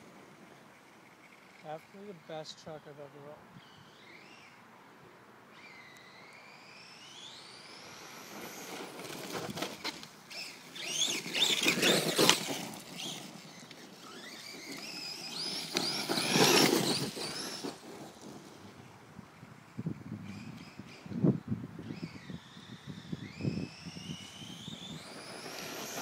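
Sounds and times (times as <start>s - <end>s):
electric toy truck motor whining: 5.5s - 18.8s, 21.8s - 26.0s
rough rush of tyres: 5.6s - 21.2s, 21.8s - 26.0s.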